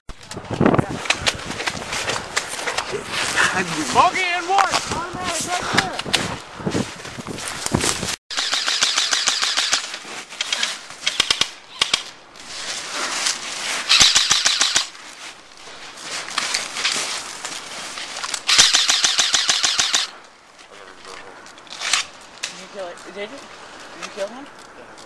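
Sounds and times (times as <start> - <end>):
airsoft guns firing: 8.3 - 9.9, 18.5 - 20.1.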